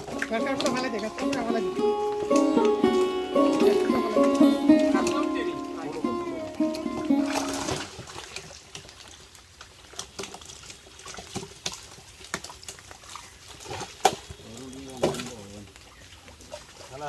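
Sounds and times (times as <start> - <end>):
plucked-string music: 0.0 - 7.9
pond water splashing: 0.0 - 17.0.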